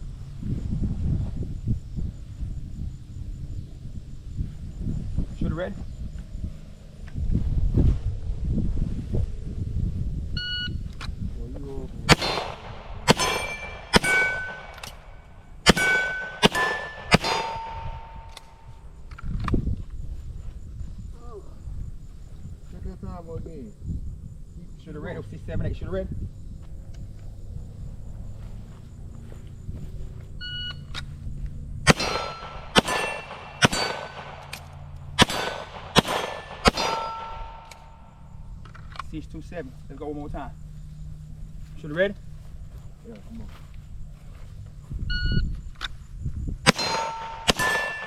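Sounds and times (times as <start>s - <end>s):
steel targets ringing: 12.1s - 18.3s, 31.9s - 34.6s, 35.2s - 38.0s, 46.7s - 48.0s
gunshots: 12.1s - 18.6s, 31.9s - 38.0s, 46.6s - 48.0s.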